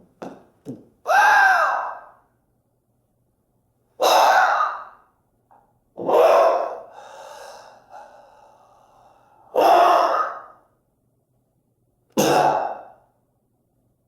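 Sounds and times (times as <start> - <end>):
person making wordless vocal sounds: 6.0 - 6.9.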